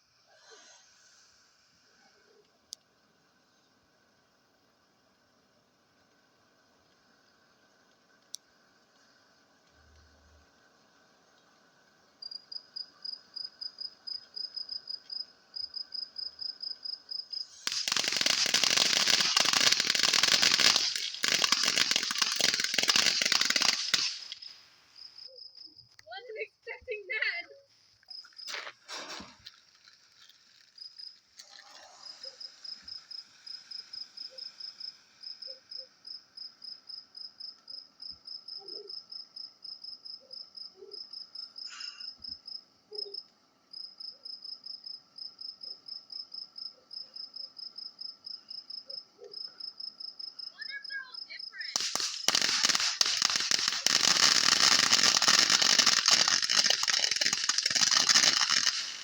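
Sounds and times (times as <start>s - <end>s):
firework crackling hiss: 0.0s - 3.6s, 12.3s - 25.3s, 27.7s - 35.7s, 41.6s - 42.2s, 51.6s - 59.0s
crickets chirping: 1.0s - 59.0s.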